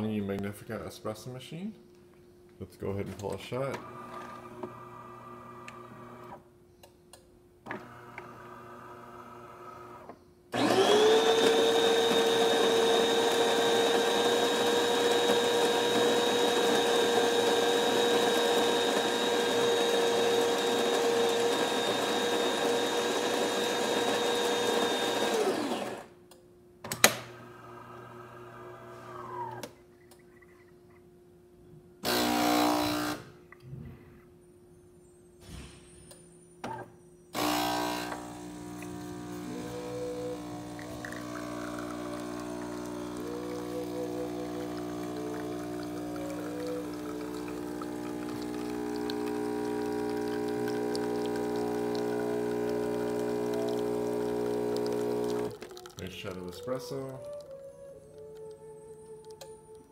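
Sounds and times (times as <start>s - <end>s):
coffee grinder whirring: 10.6s - 26.2s, 32.0s - 33.2s, 37.4s - 57.5s.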